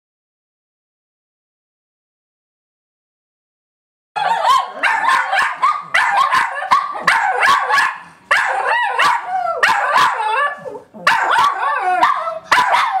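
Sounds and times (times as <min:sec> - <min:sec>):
dogs barking: 0:04.2 - 0:13.0
dogs whining howls: 0:08.5 - 0:13.0.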